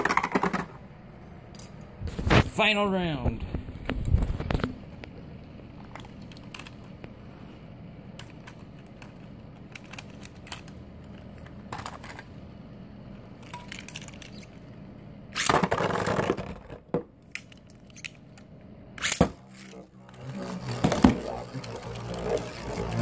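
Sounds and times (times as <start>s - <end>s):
spinning tops whirring: 19.0s - 23.0s.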